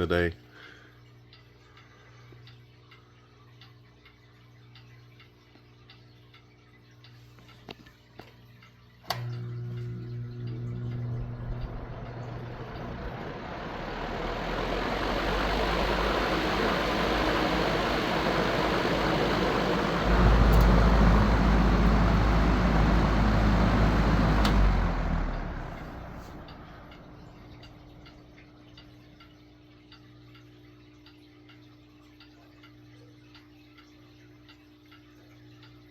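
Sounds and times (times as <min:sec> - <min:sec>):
fan switch click: 0:09.1 - 0:09.5, 0:14.5 - 0:25.0
fan motor hum and air rush: 0:09.1 - 0:28.4.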